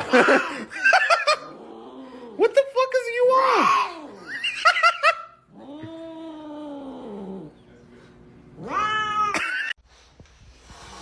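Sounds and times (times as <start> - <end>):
cat yowling and meowing: 8.6 - 9.7.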